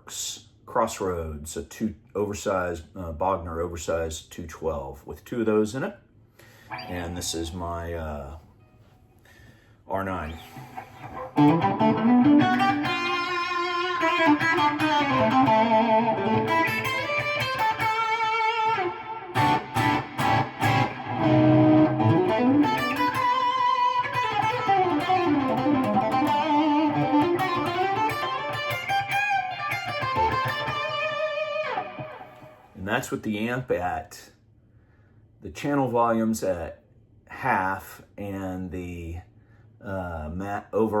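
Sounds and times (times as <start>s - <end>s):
overdriven electric guitar lead: 6.7s - 7.2s, 10.3s - 32.7s.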